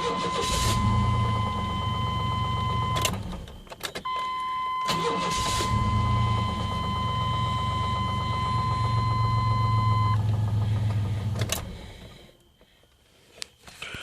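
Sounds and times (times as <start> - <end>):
car engine idling: 0.0 - 3.7, 5.0 - 12.4.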